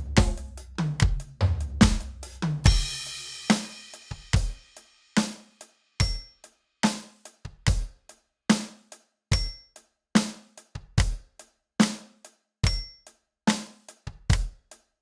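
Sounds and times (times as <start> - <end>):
bass drum hits: 0.0 - 3.0
drum strokes: 0.0 - 5.4
hi-hat strokes: 0.0 - 7.5
cymbal crash: 2.7 - 4.6.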